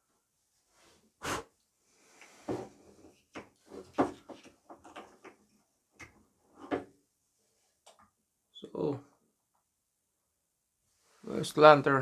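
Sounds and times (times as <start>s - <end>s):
clicks and knocks handling lantern: 3.0s - 6.9s.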